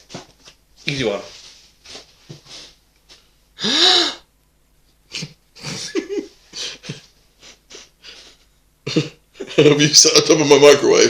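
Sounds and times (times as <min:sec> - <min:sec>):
person gasping: 0:03.6 - 0:04.2.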